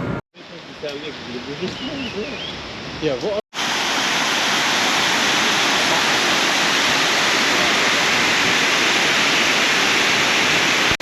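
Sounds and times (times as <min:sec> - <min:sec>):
waterfall rushing: 0:03.6 - 0:11.0.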